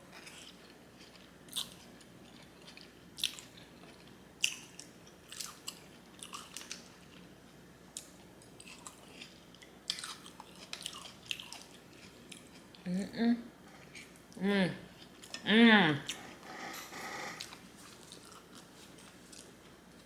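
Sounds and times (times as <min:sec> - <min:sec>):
chewing with wet mouth clicks: 0:08.0 - 0:12.8.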